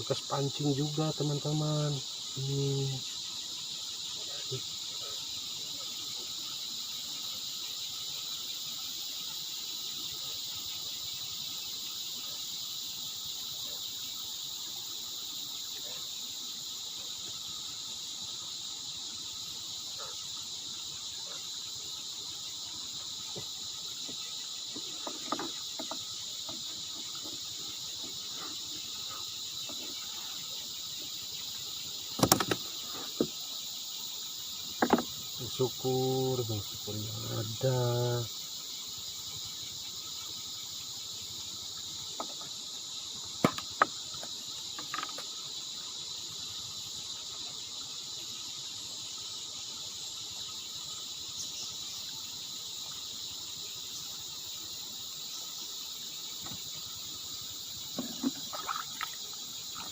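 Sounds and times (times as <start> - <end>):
insects chirping: 0.0 - 59.9
sharp knock: 32.2 - 32.6.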